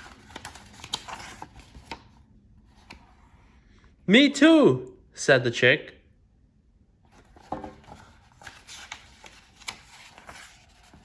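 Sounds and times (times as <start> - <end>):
book page turning: 0.0 - 3.4, 7.1 - 11.0
paper rustling: 0.0 - 3.4, 7.1 - 11.0.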